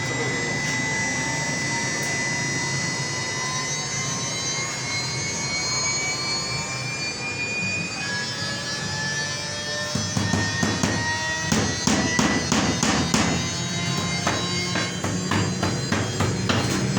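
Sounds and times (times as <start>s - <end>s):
router spindle whine: 0.0s - 16.9s
wood cutting noise: 0.0s - 16.9s.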